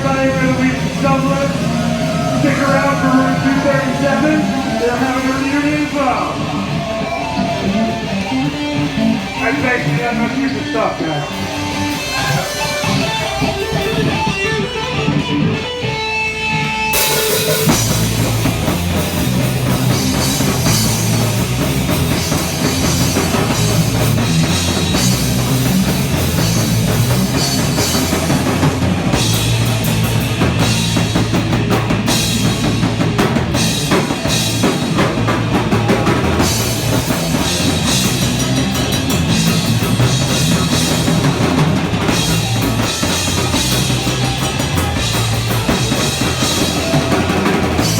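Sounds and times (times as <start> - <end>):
electric guitar: 0.0 - 47.9
live rock band playing: 0.0 - 47.9.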